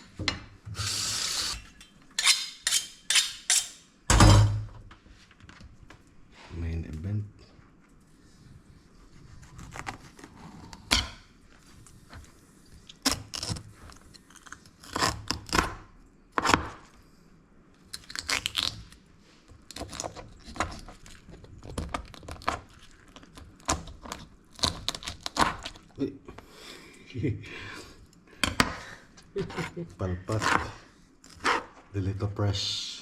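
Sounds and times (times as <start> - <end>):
knife scraping and cutting fish: 0.9 - 3.8, 29.4 - 31.8.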